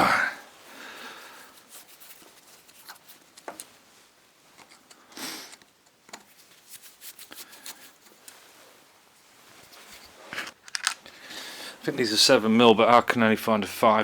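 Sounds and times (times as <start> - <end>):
brief rustling: 9.4 - 11.2
metallic tool clicks and rattles: 10.6 - 11.1.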